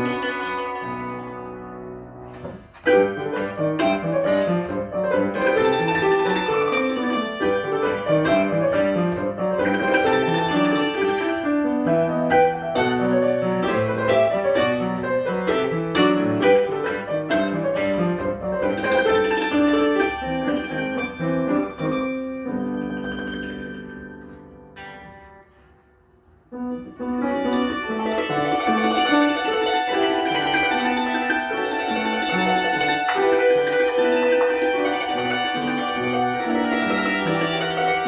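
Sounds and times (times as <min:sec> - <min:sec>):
cimbalom played with hammers: 0:26.8 - 0:38.0.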